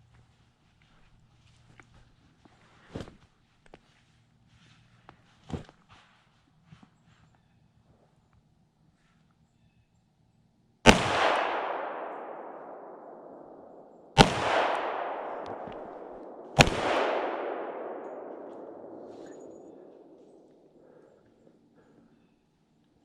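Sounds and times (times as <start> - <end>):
handgun shots echoing: 10.9 - 21.0.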